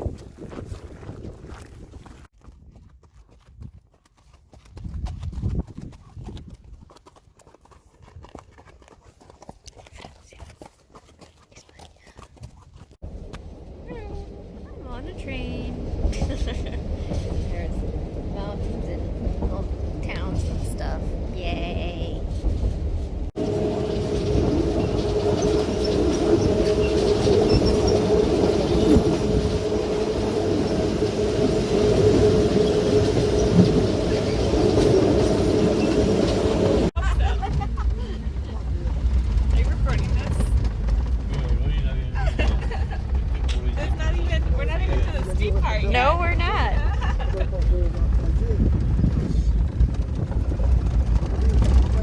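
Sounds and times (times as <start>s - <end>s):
hooves clip-clopping on hard ground: 0.0s - 13.6s, 21.7s - 52.0s
constant hum: 13.0s - 52.0s
train carriage rumbling on rails: 13.0s - 52.0s.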